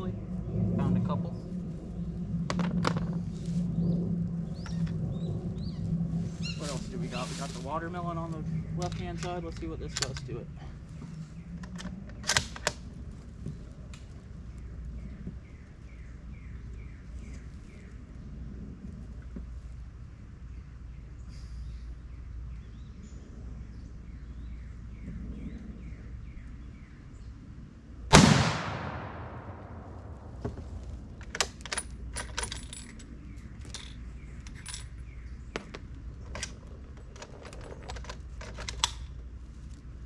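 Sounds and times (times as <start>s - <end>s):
rifle bolt metallic clicks: 8.8s - 10.3s, 28.4s - 33.1s, 37.2s - 39.1s
rifle shot echoing: 28.1s - 31.2s.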